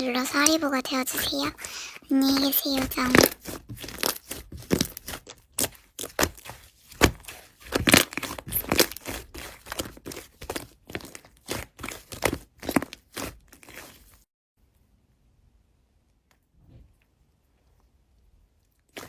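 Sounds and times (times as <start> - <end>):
slime squeezed crackling pops: 2.3 - 13.4.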